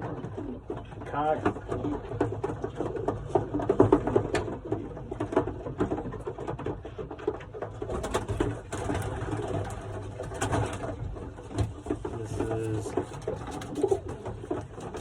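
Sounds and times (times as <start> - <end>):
pigeons cooing: 7.8 - 15.0.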